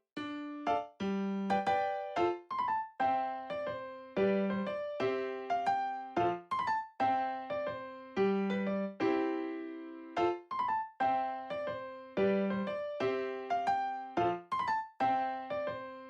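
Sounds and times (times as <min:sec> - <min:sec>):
piano melody: 0:00.0 - 0:16.0.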